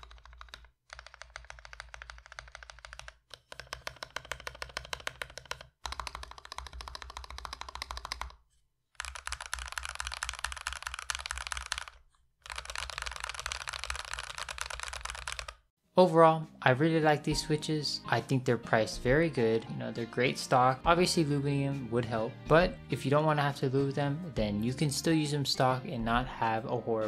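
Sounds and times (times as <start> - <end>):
fast typing on mechanical keyboard: 0.0 - 8.4, 9.0 - 15.7.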